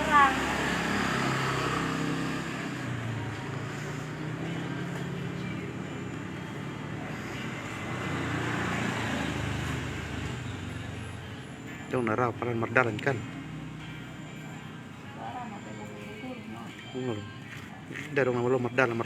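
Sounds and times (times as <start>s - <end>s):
engine humming: 0.0s - 18.8s.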